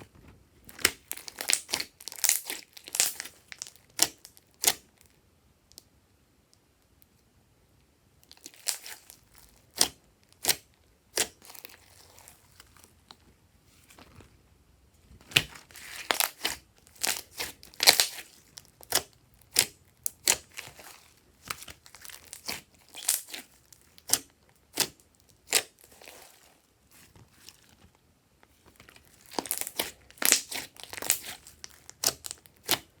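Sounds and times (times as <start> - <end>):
slime squelching and crackling: 0.7 - 4.8, 8.3 - 13.1, 15.2 - 27.9, 28.7 - 33.0.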